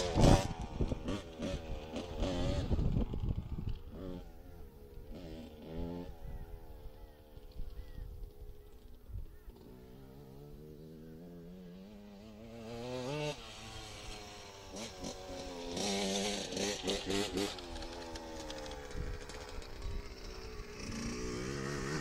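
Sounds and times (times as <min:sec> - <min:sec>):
dirt bike engine revving: 0:00.0 - 0:22.0.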